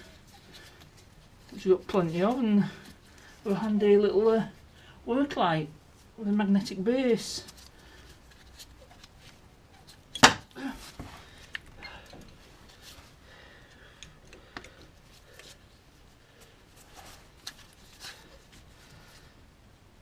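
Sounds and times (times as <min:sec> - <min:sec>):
light clicks and taps of tool: 0:14.0 - 0:15.5.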